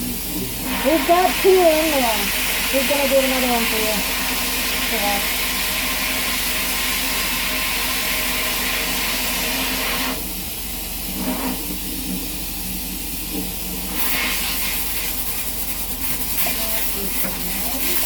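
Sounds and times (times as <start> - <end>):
sandblast nozzle hissing: 0.6 - 10.2, 13.9 - 18.0.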